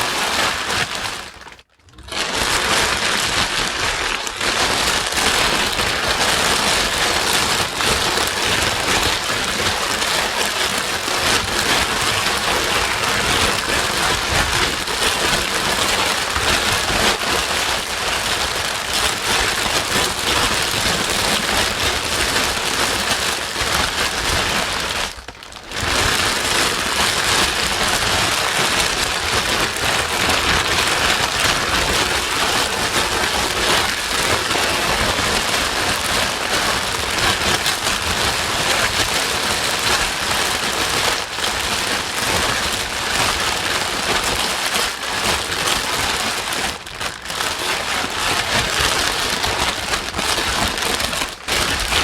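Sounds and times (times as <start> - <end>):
white noise like heavy rain: 0.0 - 1.1.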